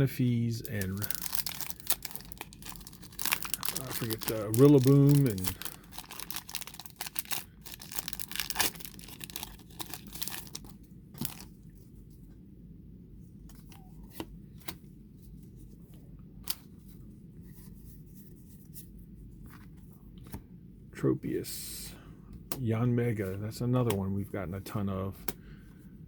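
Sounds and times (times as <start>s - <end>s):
foil wrapper tearing and crinkling: 0.6s - 11.5s.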